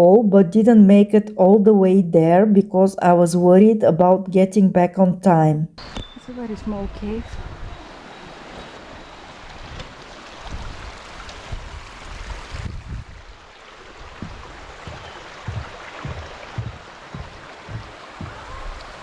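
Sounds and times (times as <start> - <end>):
water rushing down cascades: 9.1 - 19.0
low bumps on microphone: 14.0 - 18.8.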